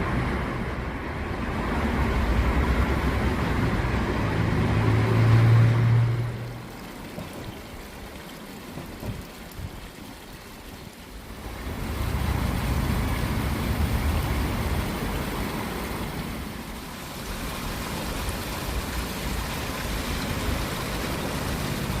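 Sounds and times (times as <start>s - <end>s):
water rushing: 0.0s - 22.0s.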